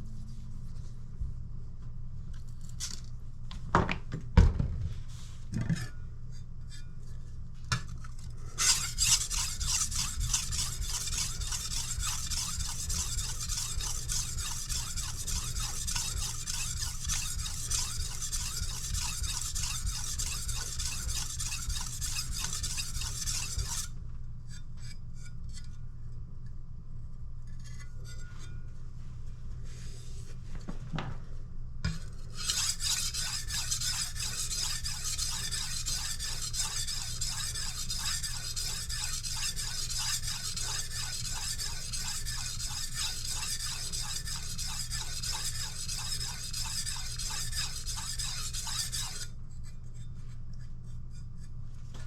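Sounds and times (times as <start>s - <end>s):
knife scraping on sharpening stone: 8.6s - 23.9s, 32.4s - 49.3s.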